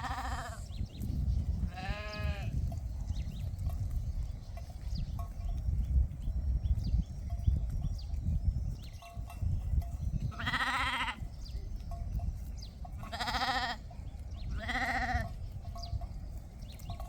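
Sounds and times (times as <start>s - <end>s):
sheep bleating: 0.0s - 0.6s, 1.7s - 2.6s, 10.4s - 11.2s, 13.1s - 13.8s, 14.6s - 15.3s.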